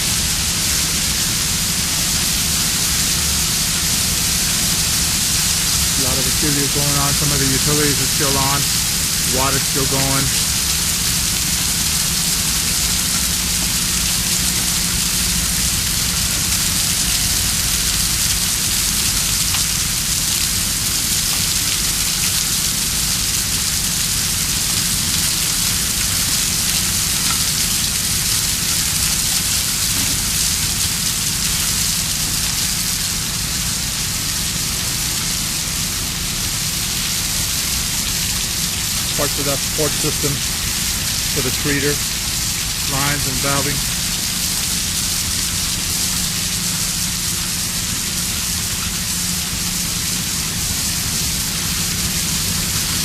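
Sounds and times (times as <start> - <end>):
water spray hissing: 1.8 - 14.8, 37.2 - 48.7.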